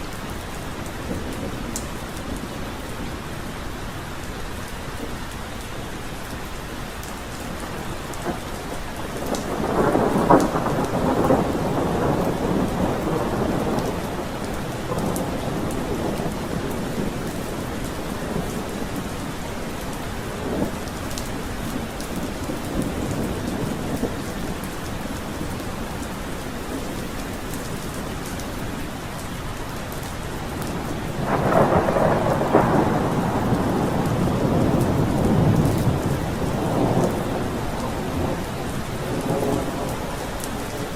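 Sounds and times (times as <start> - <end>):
heavy rain: 0.0 - 40.9
rolling thunder: 9.0 - 25.6, 30.4 - 40.9.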